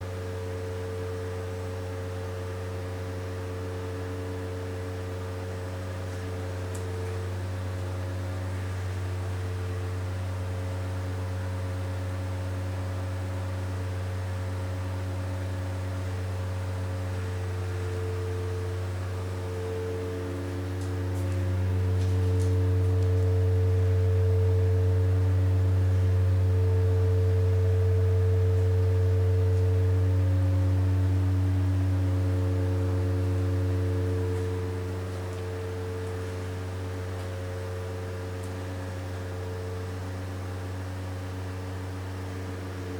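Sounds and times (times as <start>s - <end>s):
elevator low hum: 0.0s - 42.9s
high ringing tones: 17.2s - 42.9s.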